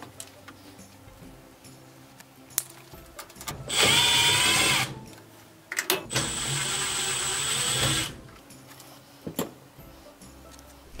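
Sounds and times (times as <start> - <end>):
electric screwdriver motor: 3.7 - 5.0, 6.1 - 8.2.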